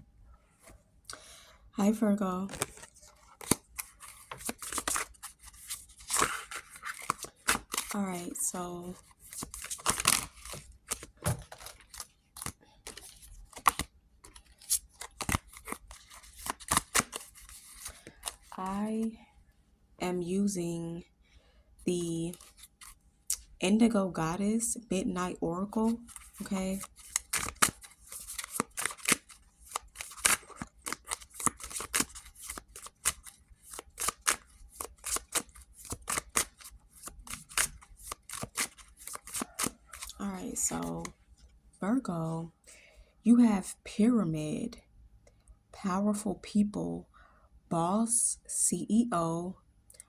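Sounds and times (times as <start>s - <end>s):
cards shuffling: 2.4s - 18.6s, 22.3s - 23.0s, 25.9s - 41.1s.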